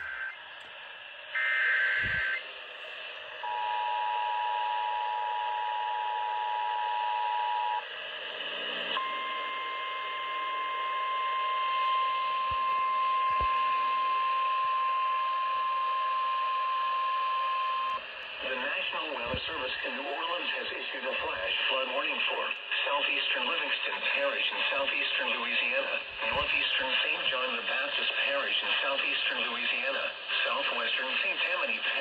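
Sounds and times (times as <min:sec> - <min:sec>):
two-tone attention signal: 0:00.0 - 0:00.4, 0:01.4 - 0:02.4, 0:09.0 - 0:18.0
radio hiss: 0:00.0 - 0:03.5, 0:11.6 - 0:15.7, 0:16.8 - 0:32.0
steady warning tone: 0:00.0 - 0:07.9, 0:08.5 - 0:32.0.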